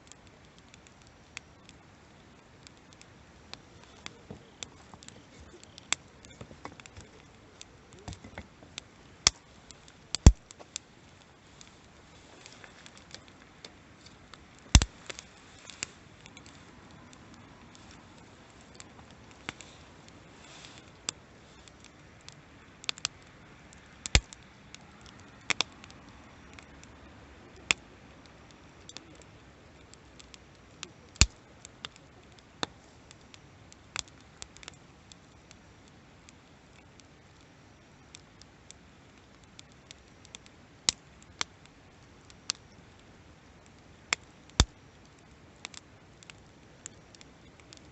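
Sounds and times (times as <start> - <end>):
wood fire crackling: 0.0 - 47.9.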